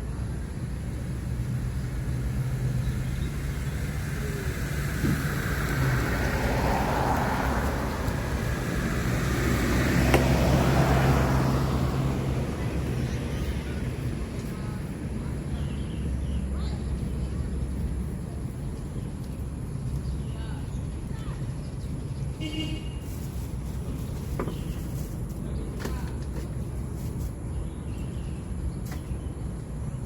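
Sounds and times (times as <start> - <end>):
low engine hum: 0.0 - 22.4
road vehicle passing by: 0.6 - 22.6.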